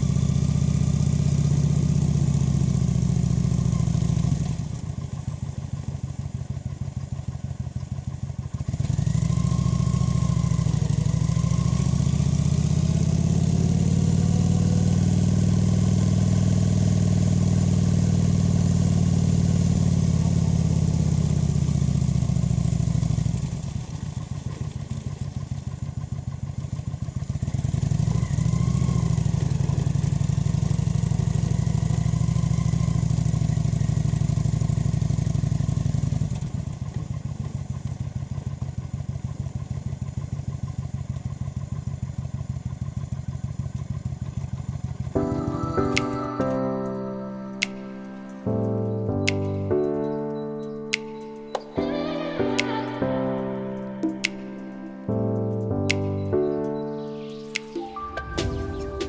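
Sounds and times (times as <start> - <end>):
motorcycle engine running: 0.0 - 46.3.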